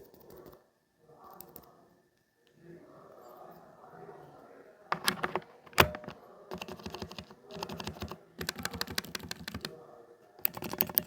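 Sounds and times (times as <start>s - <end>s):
mechanical keyboard keys clacking: 5.0s - 9.7s, 10.4s - 11.0s.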